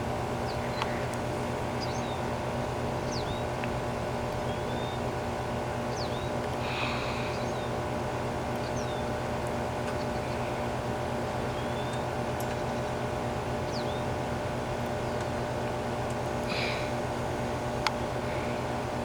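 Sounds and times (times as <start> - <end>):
steady mechanical hum: 0.0 - 19.0
bird chirps: 1.7 - 2.3, 3.0 - 3.6, 4.4 - 5.1, 5.9 - 7.8, 8.6 - 9.2, 11.4 - 12.1, 13.6 - 14.1.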